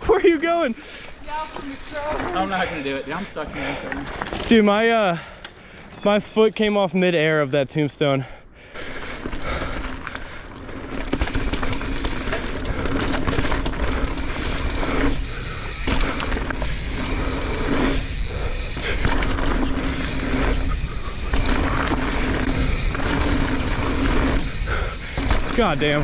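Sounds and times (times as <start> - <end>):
tyres rolling and skidding on dirt: 0.0 - 5.2, 9.2 - 26.0
bike rattling: 0.0 - 7.0, 8.6 - 26.0.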